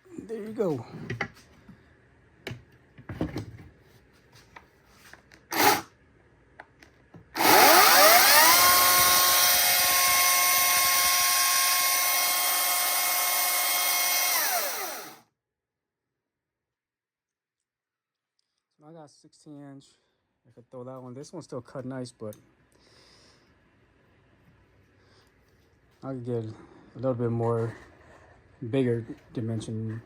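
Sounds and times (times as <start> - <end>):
electric chainsaw motor whining: 5.5 - 5.9, 7.4 - 15.2.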